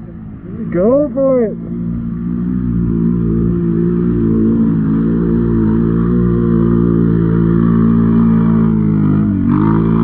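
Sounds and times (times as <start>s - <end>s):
quad engine running: 0.0s - 10.0s.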